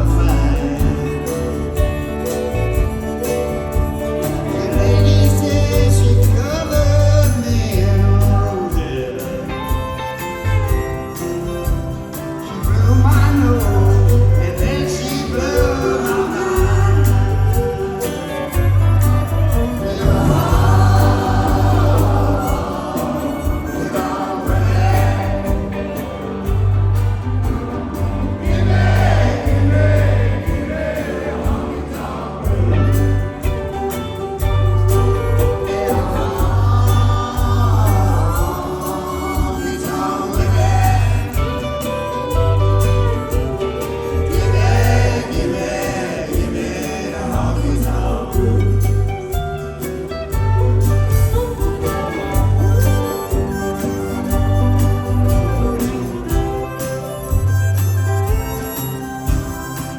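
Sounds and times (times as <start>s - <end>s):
person singing: 0.0s - 27.2s, 28.2s - 59.9s
live band playing: 0.0s - 59.9s
booming bass notes: 24.5s - 33.8s.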